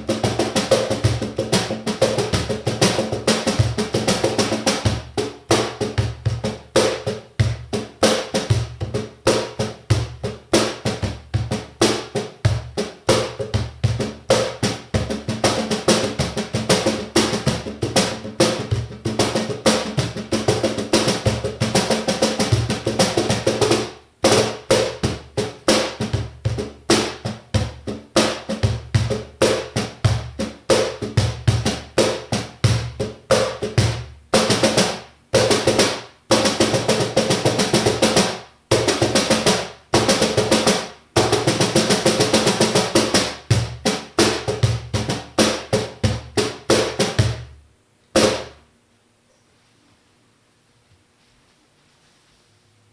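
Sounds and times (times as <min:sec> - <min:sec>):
cajon played by hand: 0:00.0 - 0:47.6, 0:48.2 - 0:48.6.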